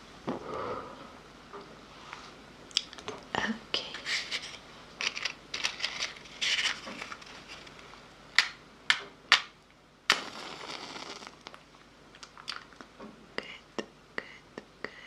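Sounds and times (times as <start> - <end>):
wet mouth clicks and smacks: 12.2 - 12.9.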